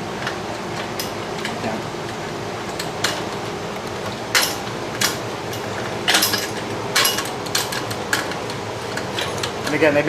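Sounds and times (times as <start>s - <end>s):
room hum: 0.0s - 10.0s.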